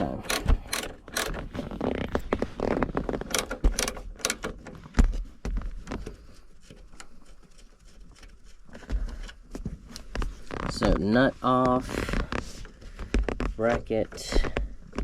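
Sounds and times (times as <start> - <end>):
ratcheting wrench clicking: 0.0 - 1.4, 3.3 - 4.7
sharp metal knocks: 0.0 - 1.4, 3.3 - 4.6
faint handling sounds: 0.0 - 15.0.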